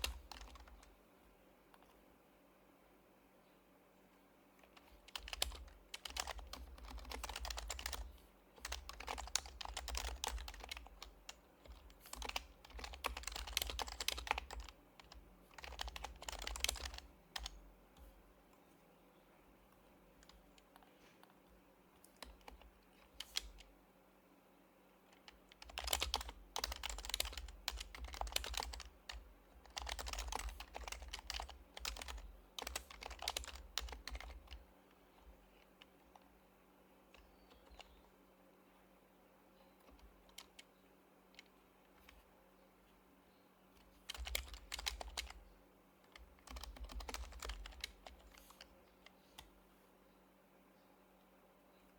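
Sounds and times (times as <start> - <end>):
keyboard typing: 0.0 - 0.9, 4.6 - 18.1, 20.2 - 21.4, 22.0 - 23.7, 25.1 - 36.3, 37.1 - 38.1, 39.8 - 42.2, 43.8 - 49.6.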